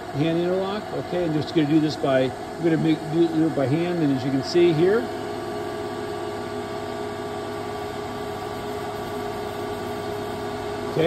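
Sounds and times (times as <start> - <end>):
grinding machine humming: 0.0 - 11.0.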